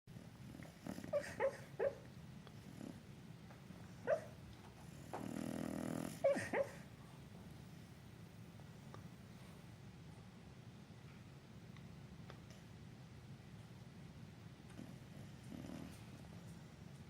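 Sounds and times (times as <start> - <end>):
dog snoring: 0.2 - 1.6, 2.6 - 3.1, 4.8 - 6.5, 14.8 - 16.2
dog yips and whimpers: 1.1 - 2.0, 4.0 - 4.3, 6.2 - 6.8.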